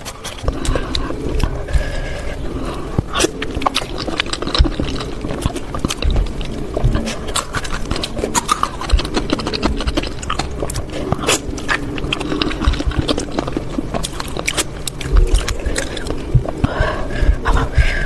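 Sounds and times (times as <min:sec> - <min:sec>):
chewing and slurping noodles: 0:00.0 - 0:17.7
wet mouth clicks: 0:02.9 - 0:17.4.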